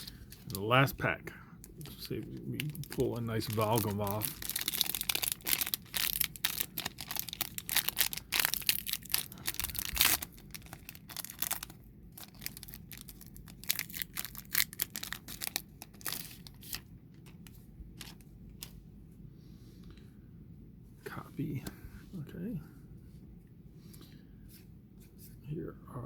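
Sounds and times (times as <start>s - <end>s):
foil wrapper tearing and crinkling: 1.8s - 16.8s.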